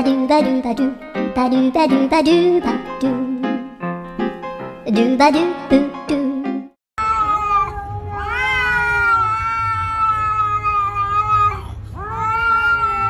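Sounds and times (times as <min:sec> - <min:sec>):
cat yowling: 0:07.0 - 0:13.0.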